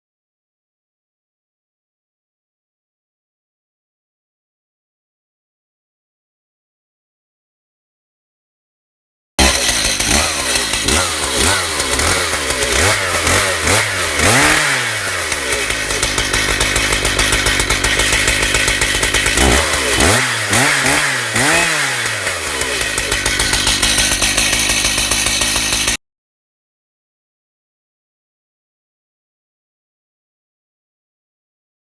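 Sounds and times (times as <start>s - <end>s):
chainsaw cutting wood: 9.4s - 26.0s.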